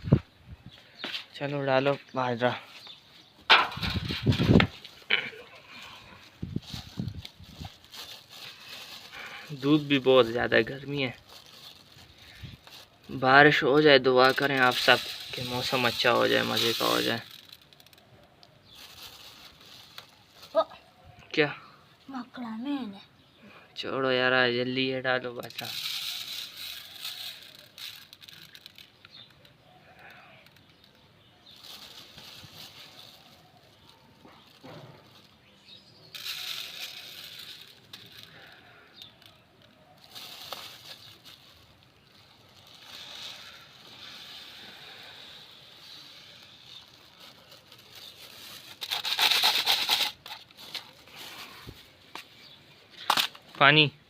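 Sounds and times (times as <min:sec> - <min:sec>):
grain pouring and scattering: 0:05.6 - 0:18.0, 0:29.9 - 0:49.0.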